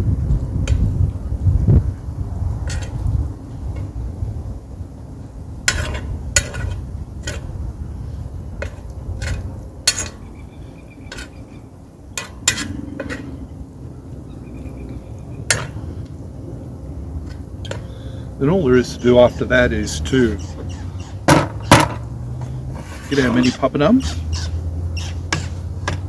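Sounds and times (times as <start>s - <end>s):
wind rumble on microphone: 0.0s - 26.0s.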